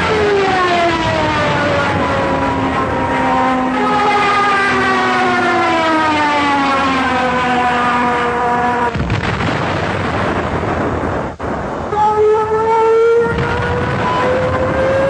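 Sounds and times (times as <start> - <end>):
dive bomber whine falling in pitch: 0.0 - 15.0
rough rumbling noise: 7.0 - 15.0.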